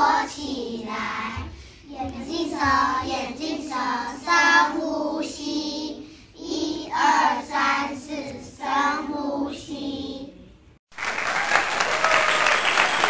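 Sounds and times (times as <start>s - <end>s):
children singing in unison: 0.0s - 10.4s.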